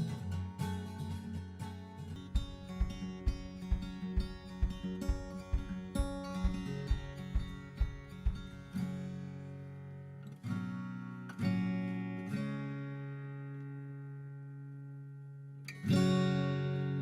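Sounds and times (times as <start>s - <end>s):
strummed acoustic guitar: 0.0s - 17.0s
soft beat: 2.2s - 9.0s.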